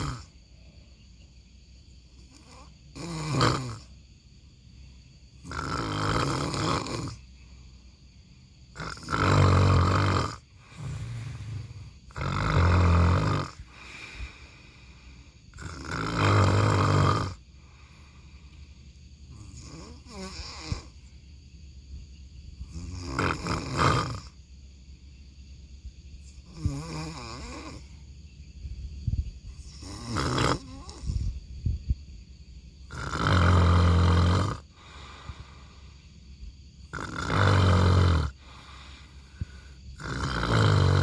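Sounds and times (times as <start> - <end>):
person snoring: 0.0 - 0.3, 2.2 - 3.9, 5.4 - 7.2, 8.7 - 17.4, 19.3 - 21.0, 22.7 - 24.4, 26.5 - 28.0, 29.6 - 31.4, 32.9 - 35.6, 36.9 - 41.0.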